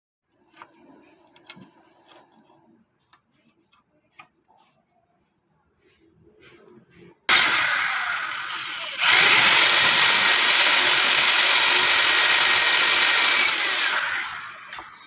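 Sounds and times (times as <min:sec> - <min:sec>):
power tool running: 0:07.3 - 0:15.0.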